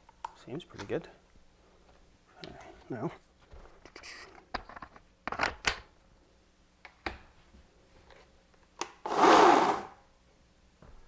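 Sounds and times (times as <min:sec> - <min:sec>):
loud rasping burst: 0:09.1 - 0:10.0.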